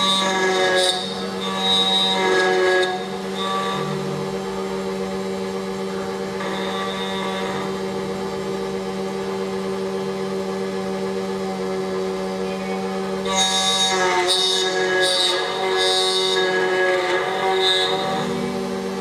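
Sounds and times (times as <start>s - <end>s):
louder brighter cutting sound: 0.0s - 9.7s
key cutting machine humming: 0.0s - 19.0s.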